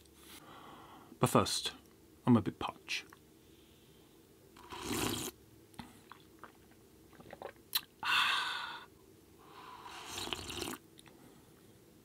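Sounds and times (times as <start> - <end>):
mouth clicks and swallows: 4.8 - 7.9.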